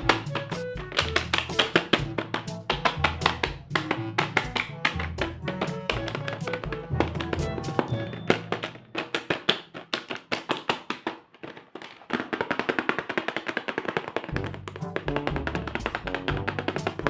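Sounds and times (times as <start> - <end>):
bass line: 0.0 - 8.1.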